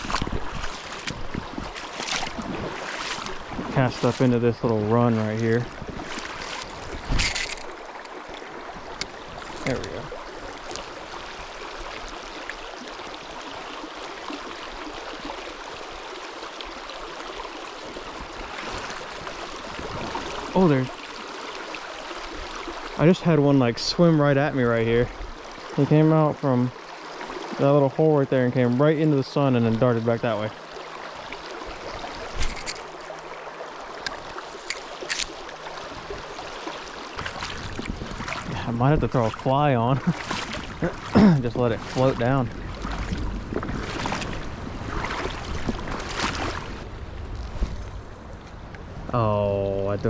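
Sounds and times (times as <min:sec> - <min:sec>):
stream rushing over rocks: 0:00.0 - 0:24.6, 0:25.3 - 0:50.0.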